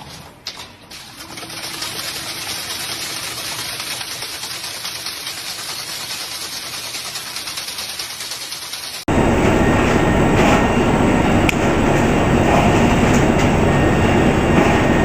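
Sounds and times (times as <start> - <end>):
machine rattling: 0.5 - 9.1.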